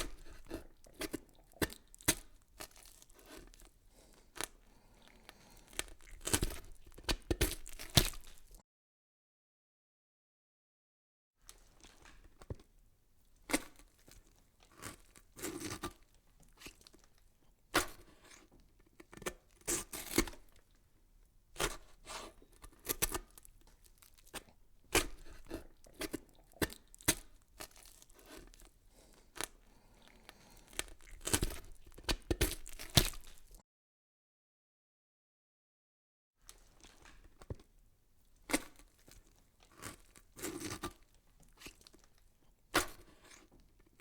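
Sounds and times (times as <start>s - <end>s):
crackles and crinkling rustles: 0.0s - 8.6s, 11.4s - 20.8s, 21.6s - 33.6s, 36.4s - 44.0s.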